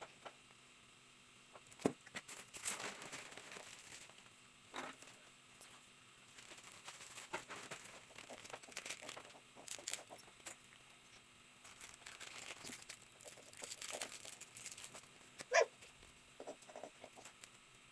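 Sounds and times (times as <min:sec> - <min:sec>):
plastic packaging crinkling: 0:02.4 - 0:04.3, 0:06.3 - 0:10.6, 0:11.6 - 0:15.4.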